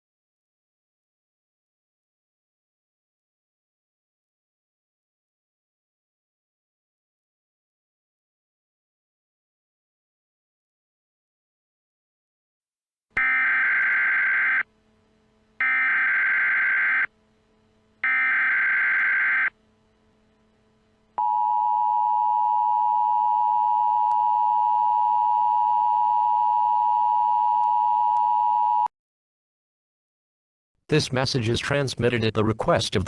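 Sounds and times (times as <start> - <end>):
screeching digital data bursts: 13.2 - 14.7, 15.6 - 17.1, 18.0 - 19.5
two-tone attention signal: 13.2 - 14.7, 15.6 - 17.1, 18.0 - 19.6.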